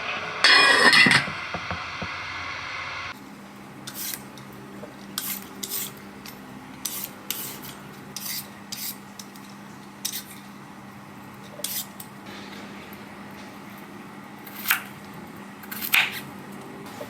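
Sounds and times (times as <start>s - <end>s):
metal utensil scraping a bowl: 0.0s - 2.4s, 5.2s - 6.0s.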